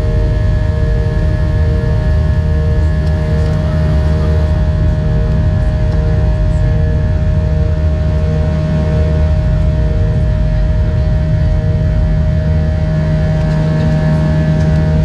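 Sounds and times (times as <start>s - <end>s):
airplane cabin engine drone: 0.0s - 15.0s.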